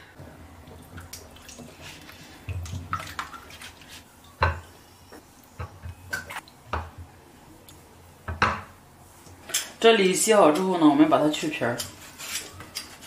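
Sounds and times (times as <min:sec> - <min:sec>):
water splashing and dripping: 0:00.6 - 0:04.0.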